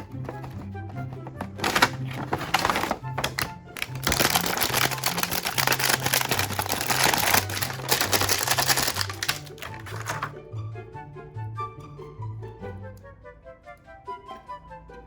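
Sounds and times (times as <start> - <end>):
rapid crackling and clicking: 0.0 - 10.3
background music with bass line: 9.7 - 15.0.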